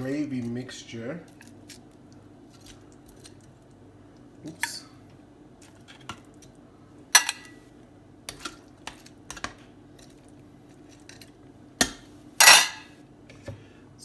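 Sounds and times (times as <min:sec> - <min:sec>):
metal utensil clinking on skillet: 0:07.2 - 0:07.5, 0:12.4 - 0:12.9.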